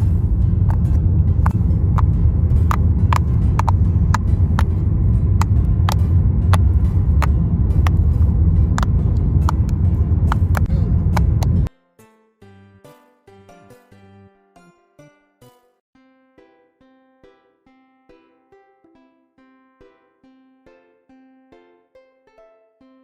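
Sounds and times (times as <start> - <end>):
road rumble inside car: 0.0 - 11.7.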